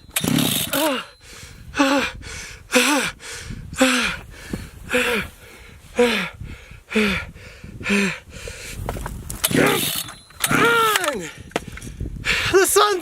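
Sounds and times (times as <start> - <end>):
chainsaw starter rope pulls: 0.0 - 1.5, 9.0 - 12.0.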